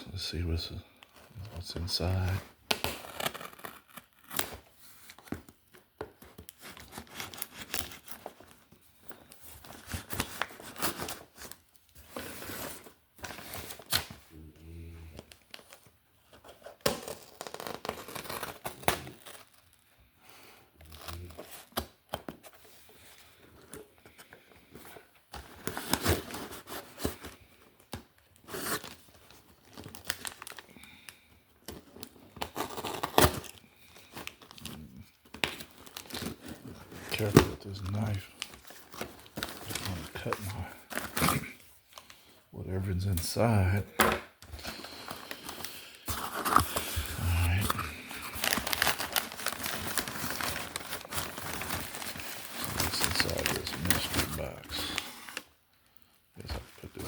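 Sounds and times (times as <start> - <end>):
packaging tearing and crumpling: 2.0 - 5.5, 6.4 - 11.6, 16.7 - 19.8, 25.5 - 42.2, 44.6 - 55.5.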